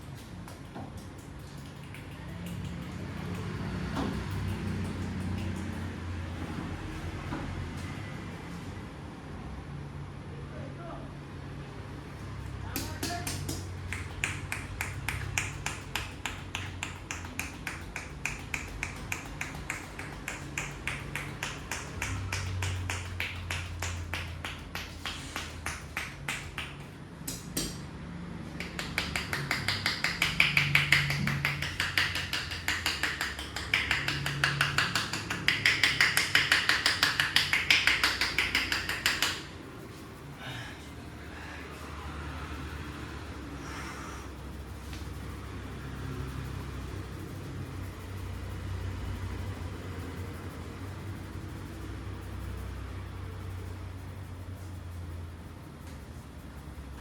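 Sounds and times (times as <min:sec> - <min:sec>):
hands tapping and slapping head: 0:00.0 - 0:06.0, 0:12.7 - 0:27.9, 0:28.5 - 0:40.0.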